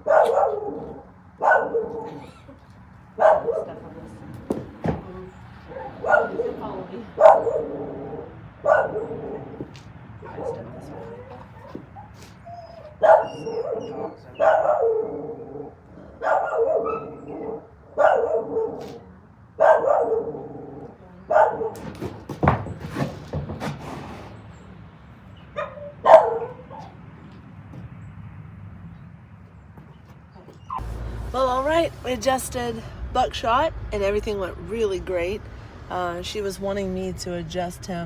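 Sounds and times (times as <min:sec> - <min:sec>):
dog barking: 0:00.0 - 0:02.3, 0:03.2 - 0:03.8, 0:05.7 - 0:09.6, 0:10.2 - 0:12.2, 0:12.8 - 0:19.0, 0:19.6 - 0:21.8, 0:25.6 - 0:27.0.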